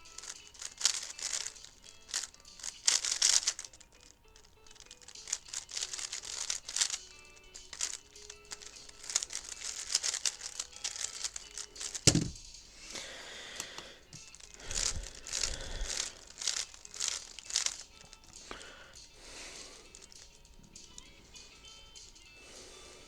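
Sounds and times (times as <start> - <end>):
puzzle cube plastic clicks: 0.0 - 12.6, 13.6 - 18.7, 19.9 - 22.2
heavy thump: 12.1 - 12.5.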